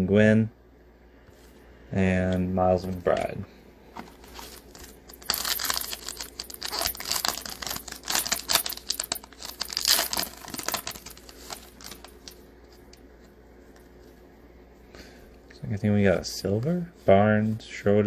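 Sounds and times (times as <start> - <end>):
foil wrapper tearing and crinkling: 4.5 - 12.1.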